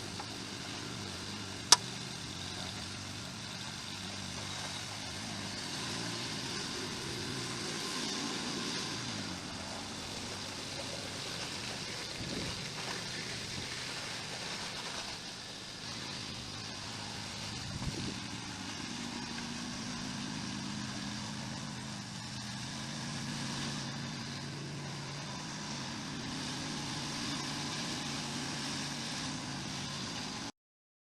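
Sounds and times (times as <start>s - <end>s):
snowblower engine running: 0.0s - 30.5s.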